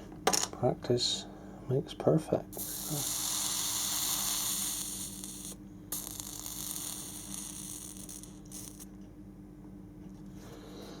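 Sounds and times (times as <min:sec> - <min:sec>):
low electrical hum: 0:00.0 - 0:11.0
hiss: 0:02.6 - 0:08.8.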